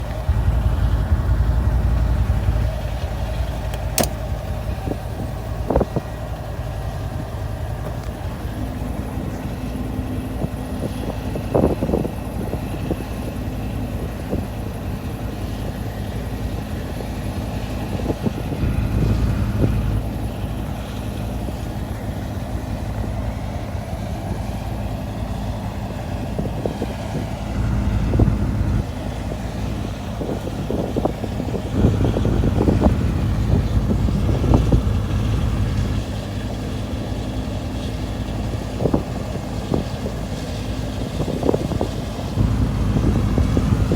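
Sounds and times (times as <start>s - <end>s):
steady hum: 0.0s - 10.0s, 18.6s - 22.1s, 27.0s - 37.6s, 42.3s - 43.9s
heavy vehicle engine rumbling: 0.0s - 43.9s.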